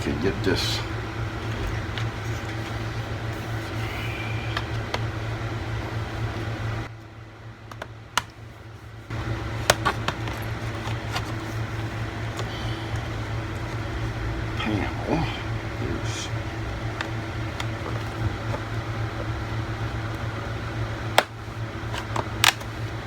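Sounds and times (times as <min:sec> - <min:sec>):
steady low hum: 0:00.0 - 0:23.0
plastic clips popping: 0:21.2 - 0:22.7.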